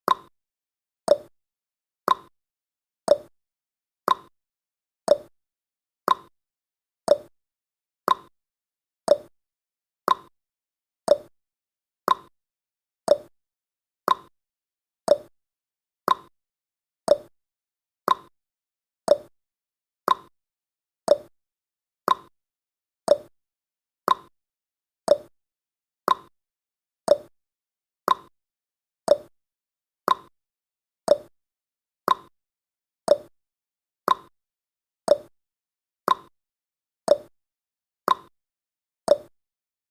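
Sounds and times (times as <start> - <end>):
countdown timer ticking: 1.1 - 1.3, 3.1 - 3.3, 5.1 - 5.3, 7.1 - 7.3, 9.1 - 9.3, 11.1 - 11.3, 29.1 - 29.3, 31.1 - 31.3, 33.1 - 33.3, 35.1 - 35.3, 37.1 - 37.3, 39.1 - 39.3.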